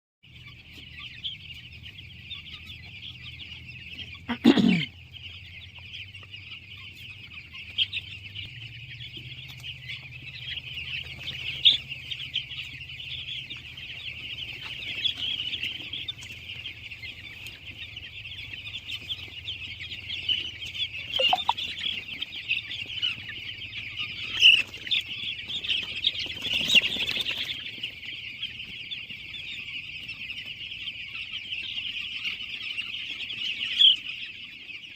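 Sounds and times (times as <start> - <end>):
chickens clucking and chirping: 0.2 - 34.9
loud falling chicken call: 21.1 - 21.8.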